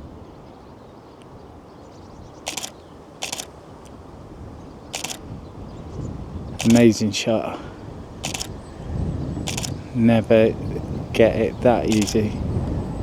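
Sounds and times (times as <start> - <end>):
low outdoor background: 0.0 - 13.0
camera shutter clacks: 2.5 - 3.5, 5.0 - 5.2, 6.6 - 6.9, 8.2 - 8.5, 9.5 - 9.8, 11.9 - 12.4.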